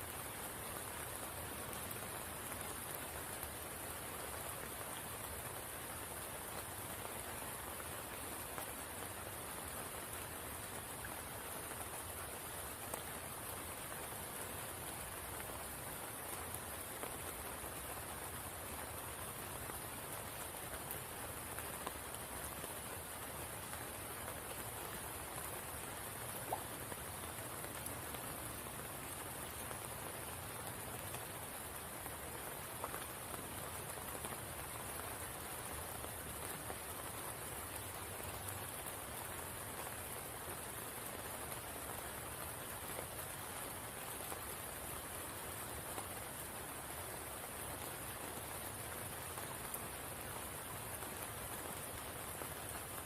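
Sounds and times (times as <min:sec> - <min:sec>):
steady rain falling: 0:00.0 - 0:53.0.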